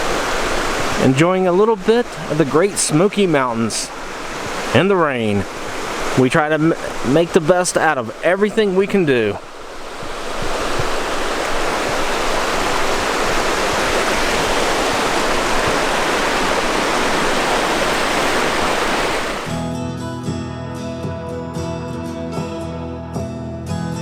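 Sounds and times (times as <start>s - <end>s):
water rushing: 0.0s - 19.7s
acoustic guitar music: 19.5s - 24.0s.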